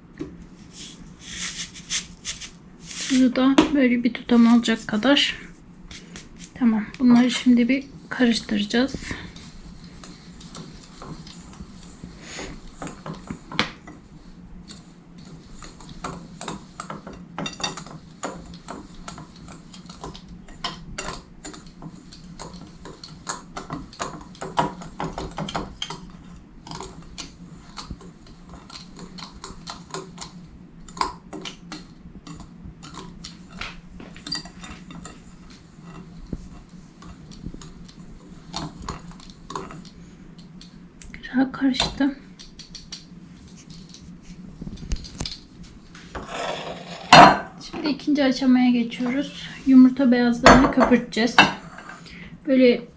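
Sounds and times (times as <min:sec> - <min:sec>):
utensil stirring in mixing bowl: 0:00.6 - 0:03.5, 0:04.2 - 0:41.2.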